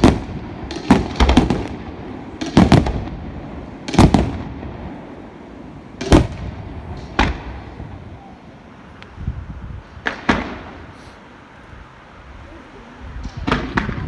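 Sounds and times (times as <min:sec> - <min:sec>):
fireworks bangs with echo: 0:00.0 - 0:08.3, 0:09.9 - 0:11.0, 0:13.2 - 0:14.0.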